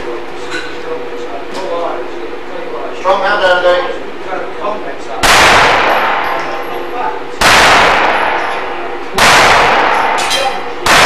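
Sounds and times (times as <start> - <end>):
handgun shots echoing: 5.2 - 6.7, 7.4 - 11.0.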